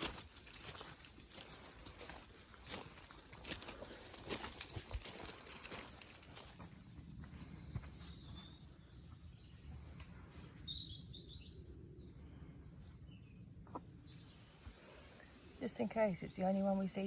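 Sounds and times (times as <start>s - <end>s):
faint birds chirping: 0.0s - 17.0s.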